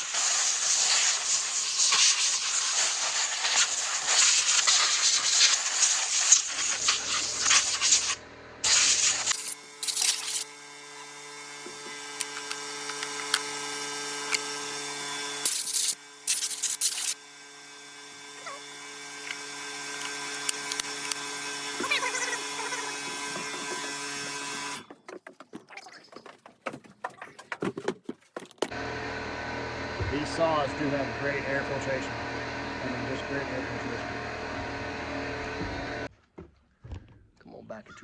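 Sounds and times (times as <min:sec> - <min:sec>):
hissing blasts of air: 0:00.0 - 0:10.5, 0:15.4 - 0:17.2
small electric motor humming: 0:00.0 - 0:26.4.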